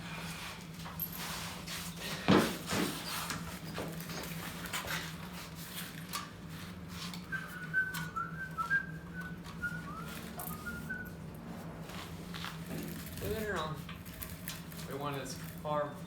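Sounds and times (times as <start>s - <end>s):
person whistling a tune: 7.3s - 11.2s.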